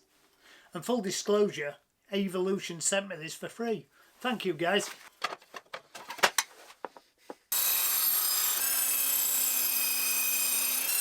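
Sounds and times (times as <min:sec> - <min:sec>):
handling clicks and knocks: 0:04.8 - 0:07.0
table saw cutting wood: 0:07.5 - 0:11.0.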